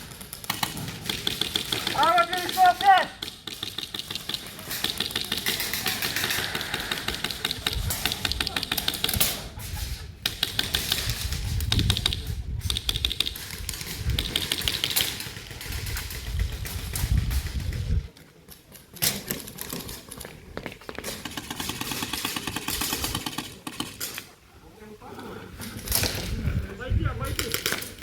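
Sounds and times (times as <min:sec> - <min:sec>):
airsoft guns firing: 0:00.0 - 0:09.6, 0:10.2 - 0:17.4, 0:21.0 - 0:24.2, 0:27.3 - 0:28.0.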